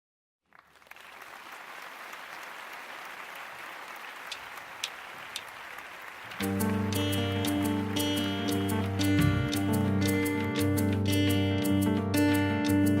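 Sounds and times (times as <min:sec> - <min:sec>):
audience applause: 0:00.5 - 0:09.5
live band playing: 0:06.4 - 0:13.0.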